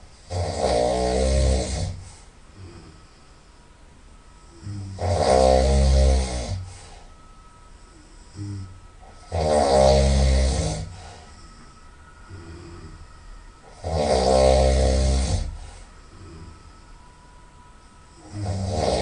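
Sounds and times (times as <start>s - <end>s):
person snoring loudly: 0.2s - 3.0s, 4.6s - 6.7s, 8.3s - 11.2s, 13.7s - 16.6s, 18.2s - 19.0s.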